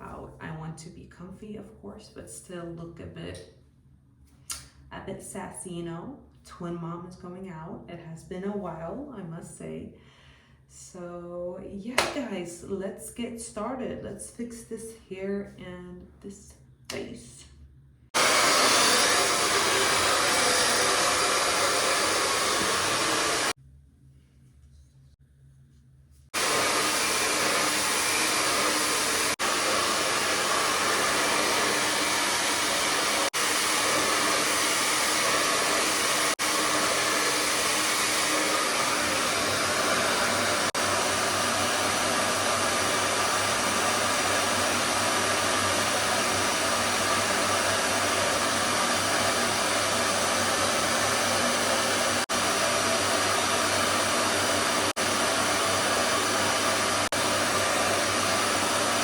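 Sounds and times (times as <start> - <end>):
hair dryer blowing: 18.2 - 23.6, 26.3 - 59.0.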